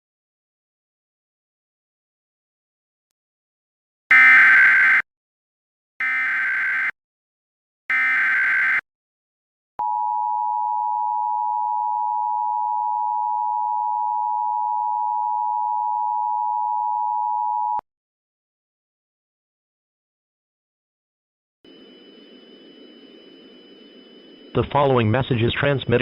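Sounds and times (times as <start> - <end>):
shrill digital data screech: 4.1 - 5.0, 7.9 - 8.8
steady two-tone alert signal: 4.1 - 5.0, 7.9 - 8.8, 21.7 - 26.0.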